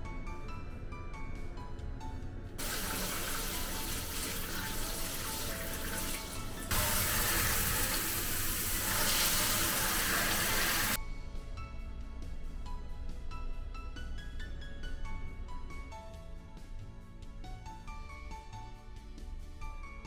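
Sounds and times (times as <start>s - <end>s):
background music: 0.0s - 20.0s
water running from a tap: 2.6s - 11.0s.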